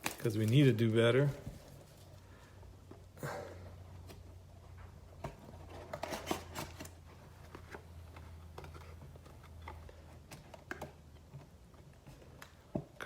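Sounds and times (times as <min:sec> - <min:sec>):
packaging crinkling: 0:00.0 - 0:02.2.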